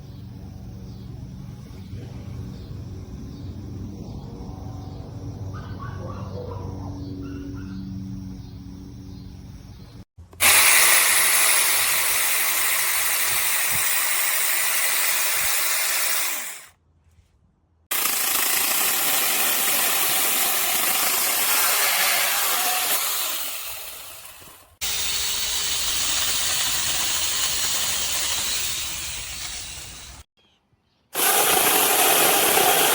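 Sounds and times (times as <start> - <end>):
electric mini chainsaw running: 10.3 - 16.7, 17.9 - 30.3, 31.2 - 32.9.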